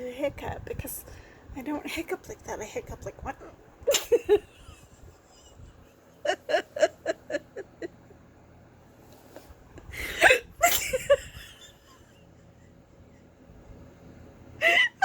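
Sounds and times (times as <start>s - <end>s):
person giggling: 3.9s - 8.2s, 9.4s - 13.3s, 14.6s - 15.0s
short laughs: 9.4s - 13.2s.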